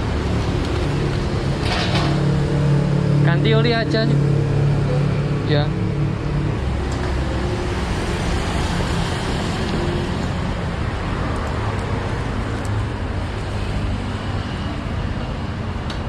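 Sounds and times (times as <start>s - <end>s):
road traffic passing: 0.0s - 16.0s.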